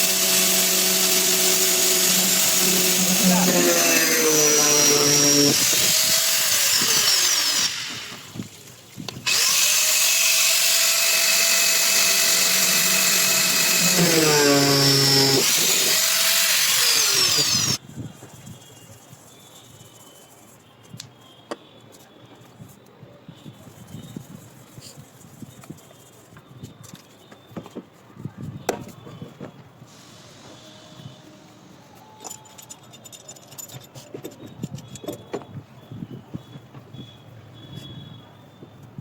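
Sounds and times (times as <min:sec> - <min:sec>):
electric power drill running: 0:00.0 - 0:08.3, 0:09.3 - 0:17.8.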